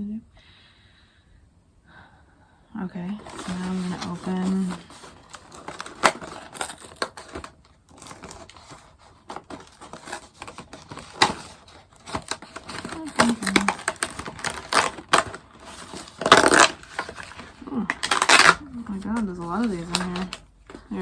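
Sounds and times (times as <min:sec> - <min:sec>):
packaging crinkling and tearing: 0:03.1 - 0:21.0.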